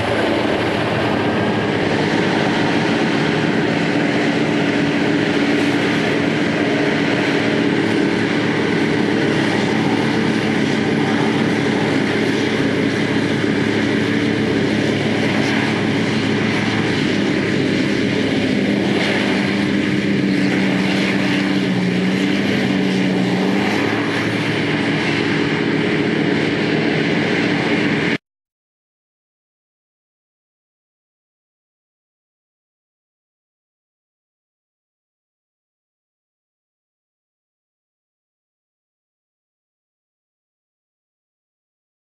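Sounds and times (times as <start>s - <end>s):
diesel engine droning: 0.0s - 28.2s.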